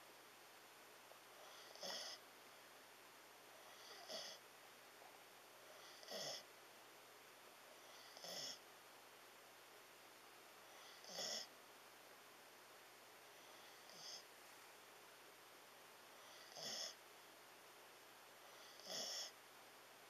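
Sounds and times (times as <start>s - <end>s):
dog snoring: 1.3s - 2.2s, 3.6s - 4.4s, 5.7s - 6.5s, 7.8s - 8.6s, 10.6s - 11.5s, 13.3s - 14.3s, 16.1s - 17.0s, 18.4s - 19.4s.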